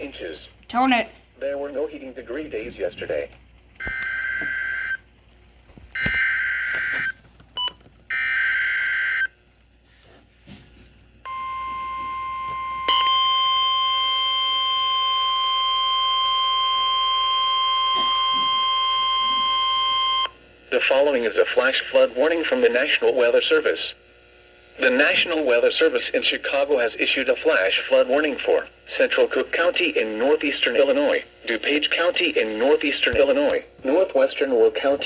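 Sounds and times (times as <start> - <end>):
steady high alarm tone: 3.8 - 5.0, 6.0 - 7.2, 8.1 - 9.4, 11.2 - 20.4.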